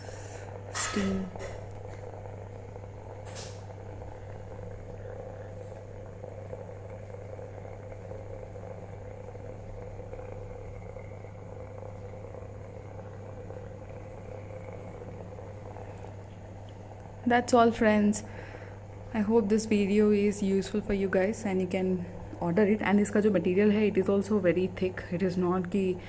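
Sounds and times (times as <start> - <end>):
steam vaporiser humming: 0.0 - 26.0.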